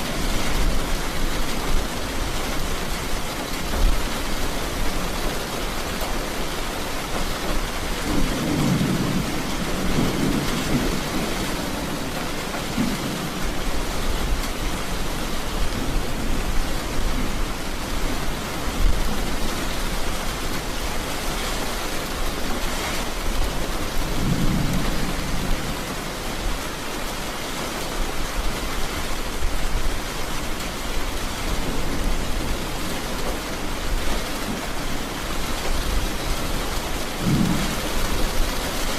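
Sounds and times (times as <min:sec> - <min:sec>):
heavy rain: 0:00.0 - 0:38.9
rolling thunder: 0:08.0 - 0:14.5, 0:23.1 - 0:26.7, 0:35.6 - 0:38.9.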